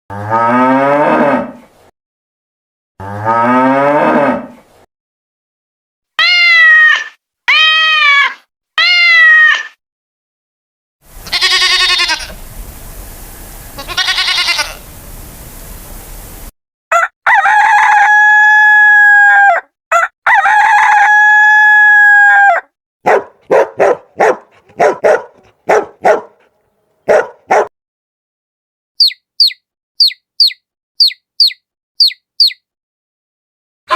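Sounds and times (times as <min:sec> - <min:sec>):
rising-and-falling animal calls: 0:11.2 - 0:12.4, 0:13.7 - 0:14.9
rooster crowing: 0:16.9 - 0:19.4, 0:20.2 - 0:22.4
hen clucking: 0:23.5 - 0:26.5.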